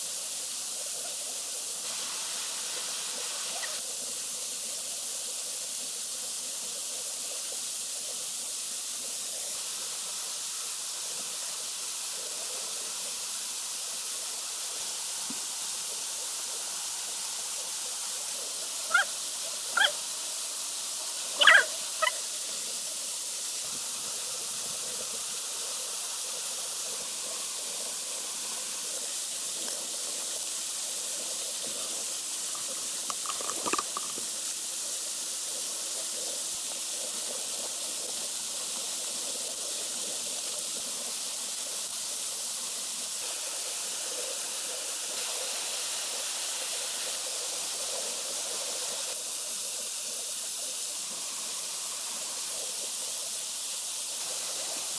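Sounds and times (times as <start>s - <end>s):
dog yipping: 3.5s - 3.8s, 18.9s - 19.1s, 19.8s - 20.0s, 21.4s - 22.2s.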